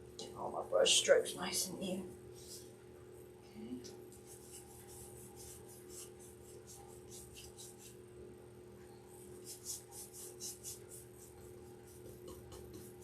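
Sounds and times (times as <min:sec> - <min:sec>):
faint steady hum: 0:00.0 - 0:13.0
paintbrush swishing on wood: 0:04.1 - 0:08.0.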